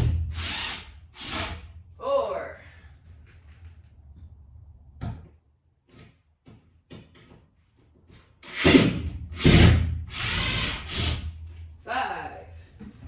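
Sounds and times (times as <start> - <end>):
power drill in short bursts: 8.4 - 11.2.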